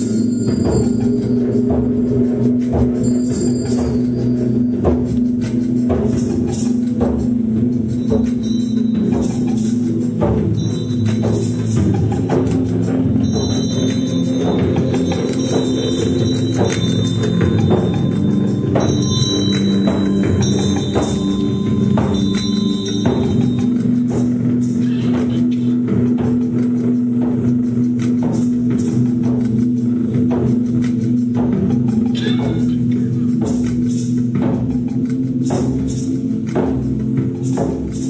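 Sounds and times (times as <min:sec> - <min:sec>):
chime-like ringing tones: 0:00.0 - 0:26.1
low drone: 0:00.0 - 0:38.0
struck percussion: 0:00.0 - 0:38.0.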